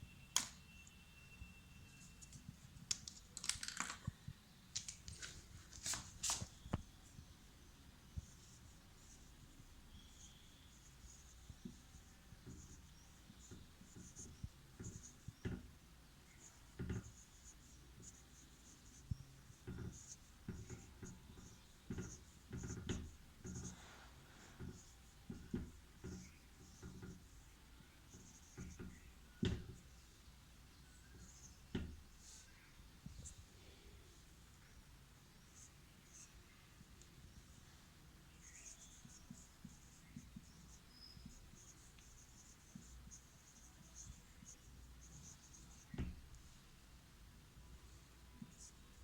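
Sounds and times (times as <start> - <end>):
scratching and light tapping: 8.1 - 30.0, 35.4 - 46.6.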